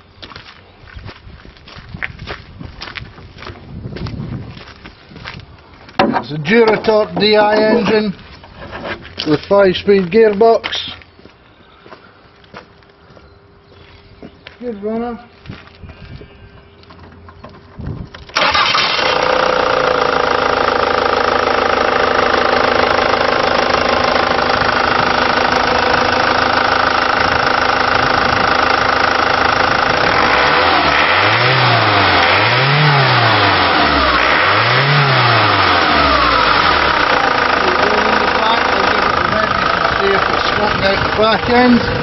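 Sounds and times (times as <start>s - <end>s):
diesel engine starting and idling: 6.0s - 8.2s, 18.2s - 42.0s
engine revving: 18.4s - 42.0s.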